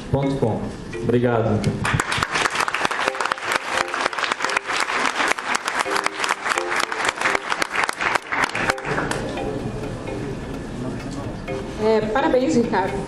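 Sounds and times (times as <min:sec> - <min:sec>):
audience applauding: 0:01.8 - 0:09.4.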